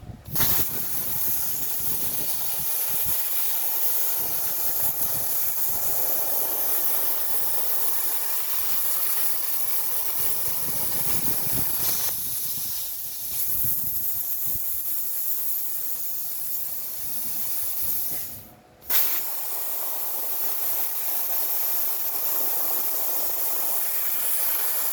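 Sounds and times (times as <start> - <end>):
plasma arc restarting burst: 0.3 - 6.0
plasma torch hissing: 0.3 - 24.9.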